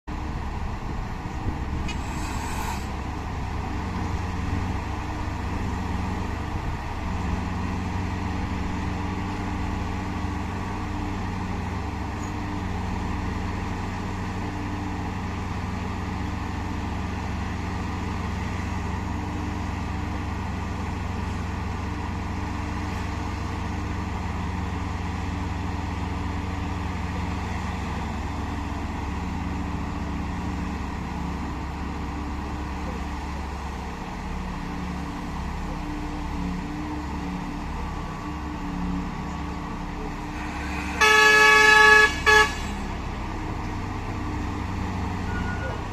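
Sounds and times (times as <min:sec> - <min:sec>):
heavy diesel engines droning: 0:00.1 - 0:45.9
brief hiss: 0:01.8 - 0:03.0.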